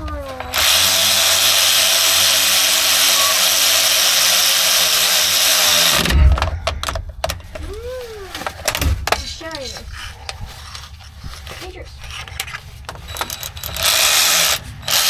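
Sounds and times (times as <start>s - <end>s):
cordless drill whining: 0.0s - 15.0s
short knocks: 5.2s - 14.6s.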